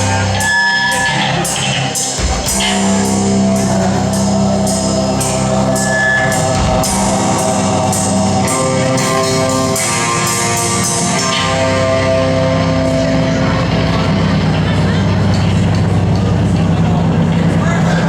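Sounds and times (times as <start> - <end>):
cymbals struck: 0.0 - 14.0
live rock band playing: 0.0 - 17.7
sustained guitar tones: 0.0 - 18.0.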